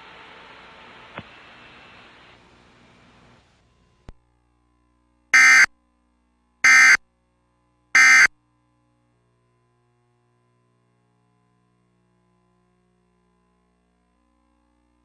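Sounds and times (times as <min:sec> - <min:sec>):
buzzing data tone bursts: 0:05.4 - 0:05.7, 0:06.6 - 0:07.0, 0:08.0 - 0:08.3.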